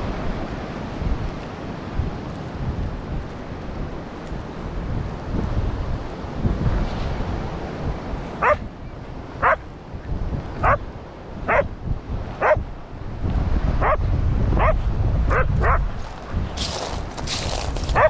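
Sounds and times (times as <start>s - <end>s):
wind rumbling on microphone: 0.0s - 18.0s
dog barking: 8.4s - 8.7s, 9.4s - 9.6s, 10.6s - 10.8s, 11.5s - 11.7s, 12.4s - 12.6s, 13.8s - 14.0s, 14.6s - 15.9s.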